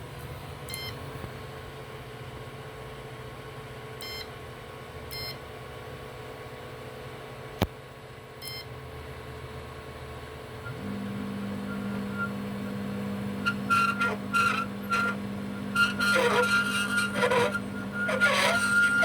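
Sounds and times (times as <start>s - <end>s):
high whine of motors: 0.0s - 19.0s
uneven grinding bursts: 13.3s - 19.0s.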